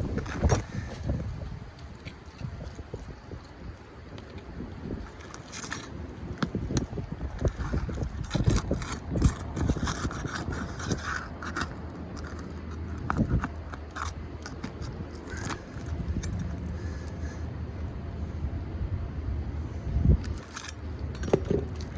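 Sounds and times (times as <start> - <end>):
low steady rumble: 0.0 - 21.9
hand tools scraping shingles: 7.4 - 16.0.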